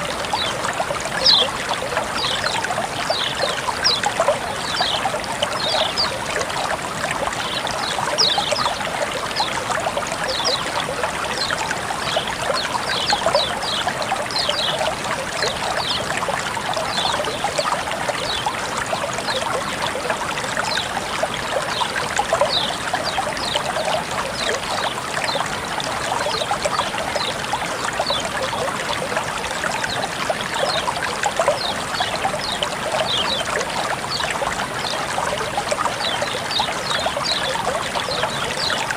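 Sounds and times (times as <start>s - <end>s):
high bright water plinks: 0.0s - 38.9s
water trickling and babbling: 0.0s - 38.9s.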